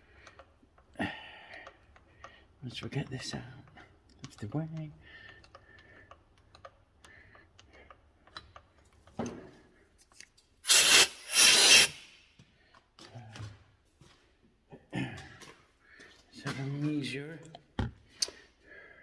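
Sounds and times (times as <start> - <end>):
short rasping scrapes: 10.7 - 12.1.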